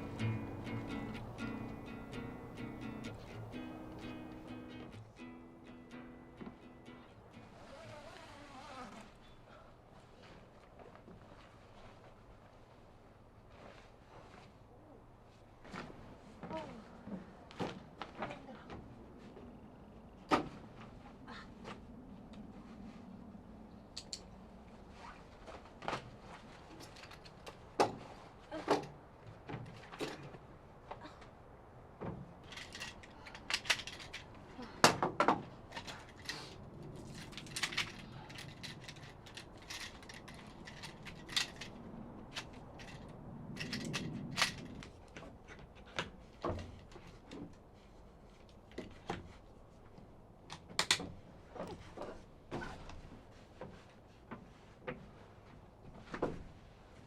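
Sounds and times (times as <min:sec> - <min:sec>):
rustling of objects handled: 0:32.1 - 0:34.8, 0:35.4 - 0:57.0
objects clicking and knocking: 0:32.4 - 0:34.4, 0:35.3 - 0:44.9.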